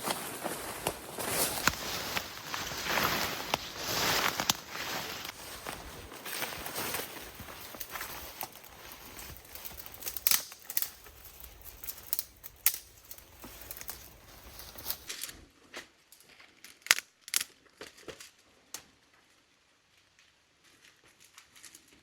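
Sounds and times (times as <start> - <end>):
wood crackling and snapping: 0.0 - 15.4, 16.6 - 18.3.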